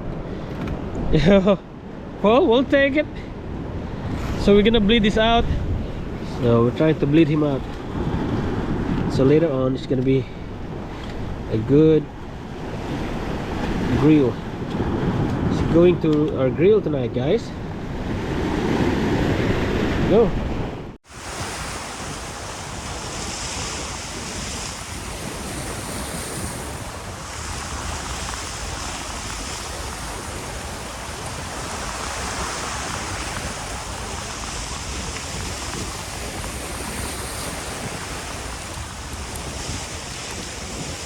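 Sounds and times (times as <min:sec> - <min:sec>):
wind rumbling on microphone: 0:00.0 - 0:41.0
surf washing against rocks: 0:03.9 - 0:16.3, 0:21.0 - 0:41.0.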